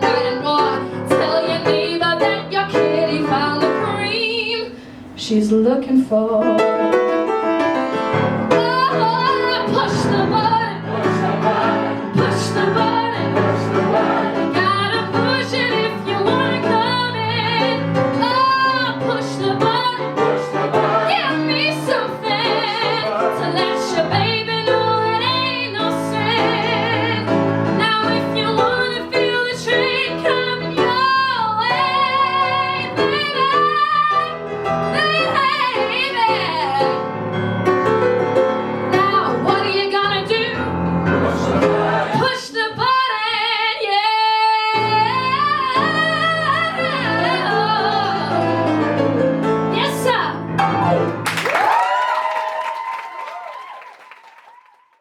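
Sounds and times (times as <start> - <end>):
woman singing: 0.0 - 6.9, 8.5 - 10.9, 12.1 - 37.1, 38.9 - 40.7, 42.1 - 49.1
instrumental accompaniment: 45.5 - 51.5.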